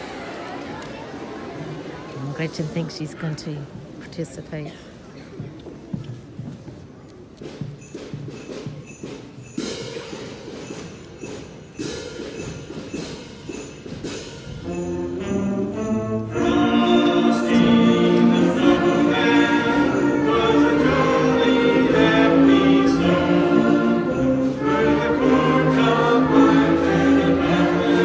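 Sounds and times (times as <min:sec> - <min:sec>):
small metal shakers ticking a beat: 0:06.0 - 0:28.0
concert band playing: 0:09.6 - 0:28.0.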